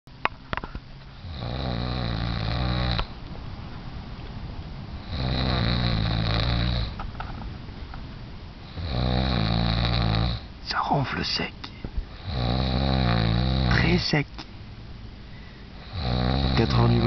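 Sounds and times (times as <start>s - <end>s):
person snoring: 1.2s - 3.1s, 5.0s - 7.0s, 8.7s - 10.5s, 12.2s - 14.0s, 15.8s - 17.0s
quiet breathing: 8.6s - 17.0s.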